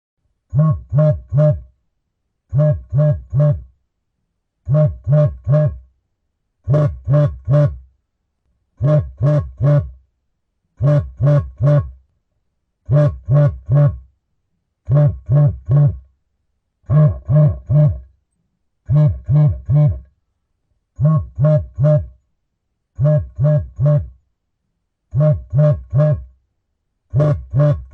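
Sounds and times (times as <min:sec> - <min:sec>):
phone vibrating buzzes: 0:00.5 - 0:01.7, 0:02.5 - 0:03.7, 0:04.6 - 0:05.9, 0:06.6 - 0:07.9, 0:08.8 - 0:10.0, 0:10.8 - 0:12.0, 0:12.9 - 0:14.1, 0:14.9 - 0:16.1, 0:16.9 - 0:18.2, 0:18.8 - 0:20.1, 0:21.0 - 0:22.2, 0:23.0 - 0:24.2, 0:25.1 - 0:26.4, 0:27.1 - 0:27.9.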